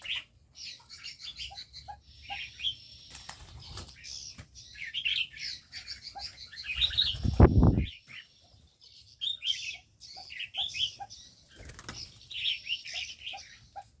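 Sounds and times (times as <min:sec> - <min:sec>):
birds chirping: 0:00.0 - 0:14.0
wing flapping: 0:11.5 - 0:12.2.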